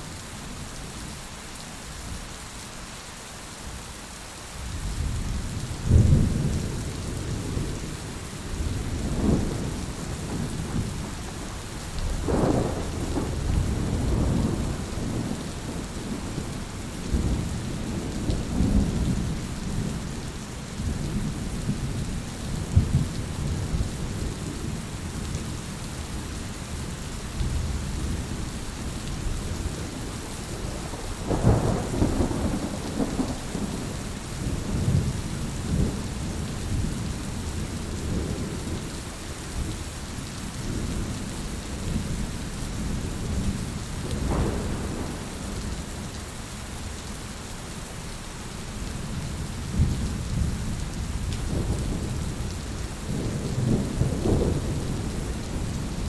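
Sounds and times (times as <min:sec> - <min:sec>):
steady rain falling: 0:00.0 - 0:56.0
thunder rumbling: 0:05.8 - 0:20.0, 0:27.4 - 0:37.3, 0:42.8 - 0:46.1, 0:49.2 - 0:56.0.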